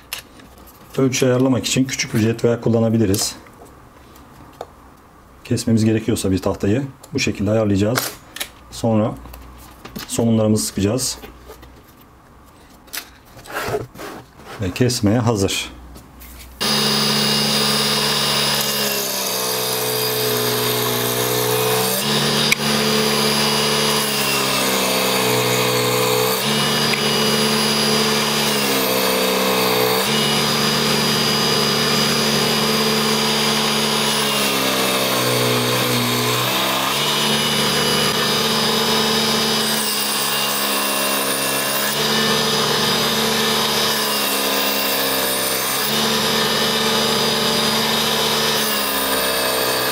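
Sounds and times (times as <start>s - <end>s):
motor whine: 16.6s - 40.8s
table saw cutting wood: 16.6s - 49.9s.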